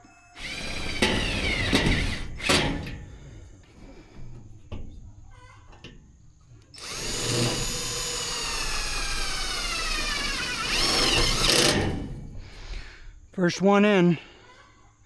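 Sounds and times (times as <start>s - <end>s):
power drill whining: 0.4s - 3.5s, 6.8s - 13.2s.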